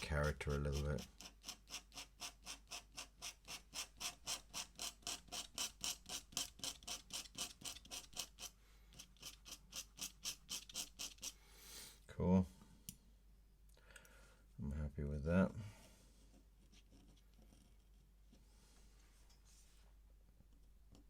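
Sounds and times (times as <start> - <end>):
ink pen scratching on paper: 0.0 - 11.4, 16.6 - 18.0.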